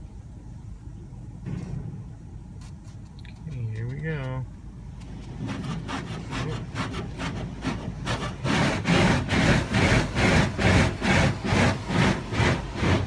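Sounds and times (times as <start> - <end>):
car wash brushes swishing: 5.0 - 13.0.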